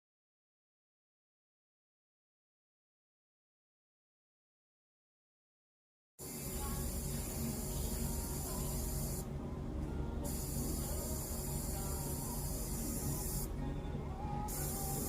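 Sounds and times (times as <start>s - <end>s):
nebulizer hissing: 6.3s - 9.3s, 10.3s - 13.5s, 14.4s - 15.0s.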